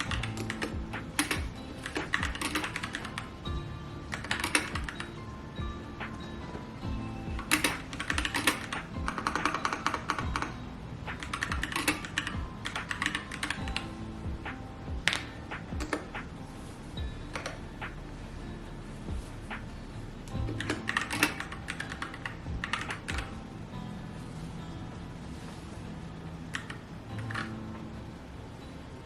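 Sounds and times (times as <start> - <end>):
keyboard typing: 0.0 - 3.3, 4.1 - 5.2, 7.4 - 13.9, 20.4 - 23.4, 26.5 - 27.5
background music: 0.0 - 29.0.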